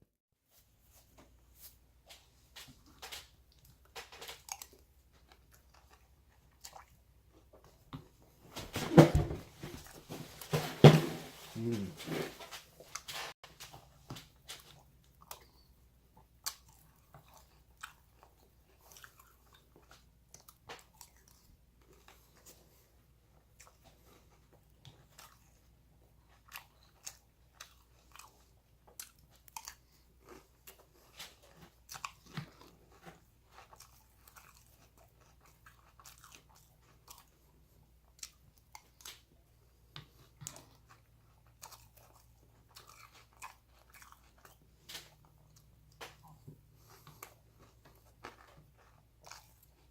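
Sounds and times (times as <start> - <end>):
cereal crunching while chewed: 2.2 - 7.9, 12.5 - 49.9.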